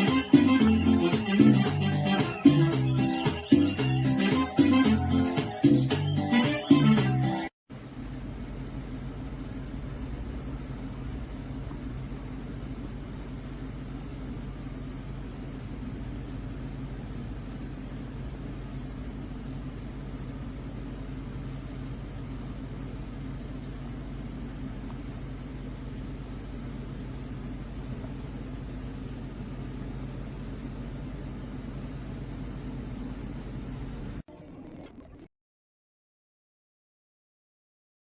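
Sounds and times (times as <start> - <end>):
music: 0.0 - 7.5.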